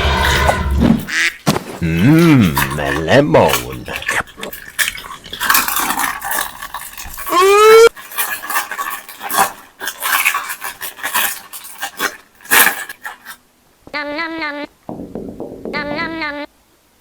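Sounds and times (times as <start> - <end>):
sand crunching and scraping: 0.0 - 4.5.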